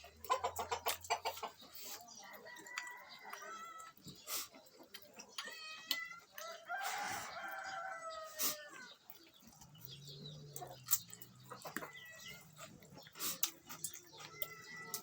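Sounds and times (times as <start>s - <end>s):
rooster crowing: 6.4s - 8.9s.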